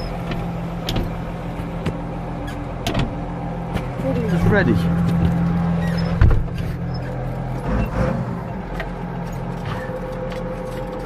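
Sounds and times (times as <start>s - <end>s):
tractor diesel engine running: 0.0s - 11.0s
loud thump: 6.2s - 6.6s.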